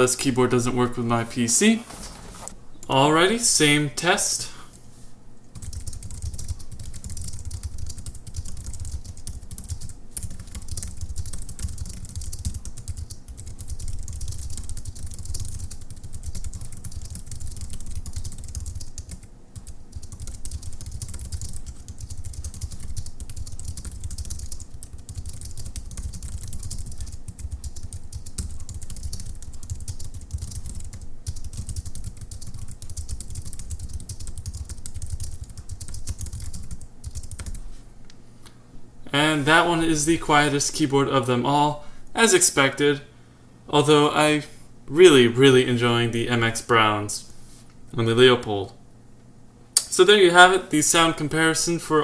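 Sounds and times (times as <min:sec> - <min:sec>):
keyboard typing: 0:05.6 - 0:37.6.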